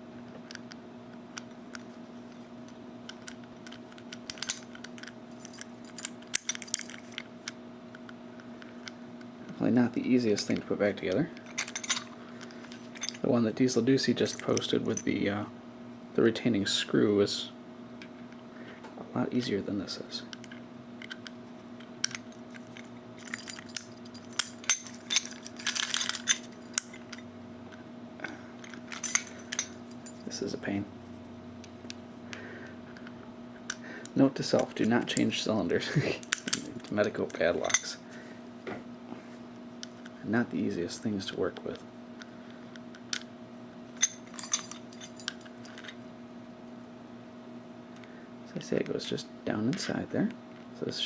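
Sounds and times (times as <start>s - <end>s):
faint steady hum: 0.0s - 51.0s
metal clicks of padlock parts: 3.1s - 7.6s, 22.0s - 27.2s, 28.6s - 30.3s, 36.2s - 38.0s, 44.0s - 46.0s.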